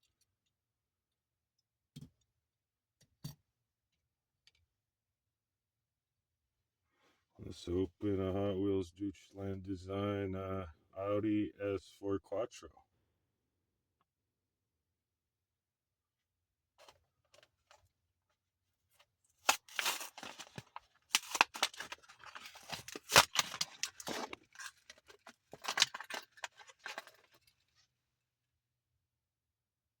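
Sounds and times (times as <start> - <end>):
plastic packaging tearing: 19.4 - 27.4.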